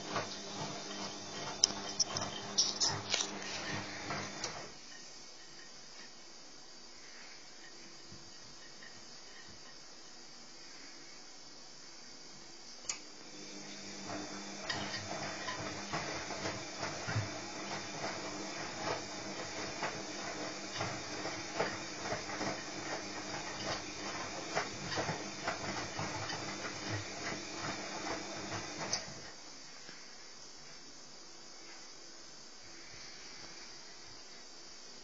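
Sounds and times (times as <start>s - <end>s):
washing machine running: 0.0s - 5.0s, 13.1s - 29.4s.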